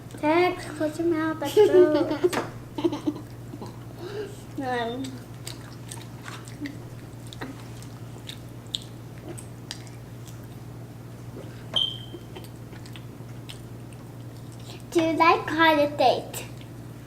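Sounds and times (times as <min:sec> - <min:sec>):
children chewing food: 0:00.0 - 0:15.0, 0:16.3 - 0:17.0
steady low hum: 0:00.0 - 0:17.0
mouth clicks and smacks: 0:05.0 - 0:10.6, 0:11.8 - 0:14.9
brief high squeak: 0:11.8 - 0:12.2.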